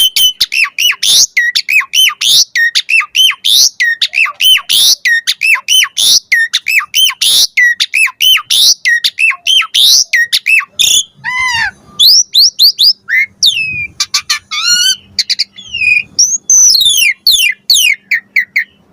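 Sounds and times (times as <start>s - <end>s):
starling singing whistled notes: 0.0s - 18.9s.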